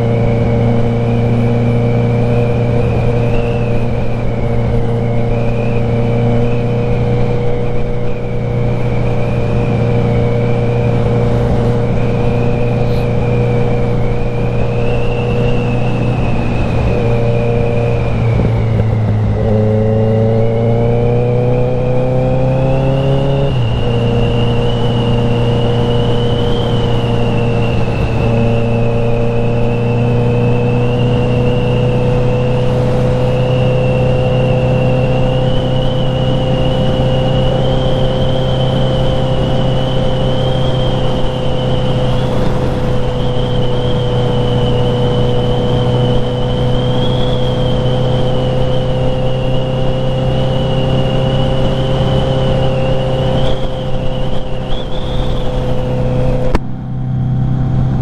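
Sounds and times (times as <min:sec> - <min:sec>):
motorcycle engine cruising: 0:00.0 - 0:58.0
thin high whine: 0:22.7 - 0:56.6.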